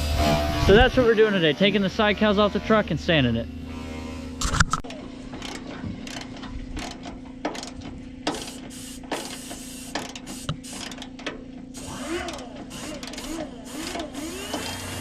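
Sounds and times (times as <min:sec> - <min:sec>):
steady low hum: 0:00.0 - 0:14.2
ratchet wrench clicking: 0:05.4 - 0:14.8.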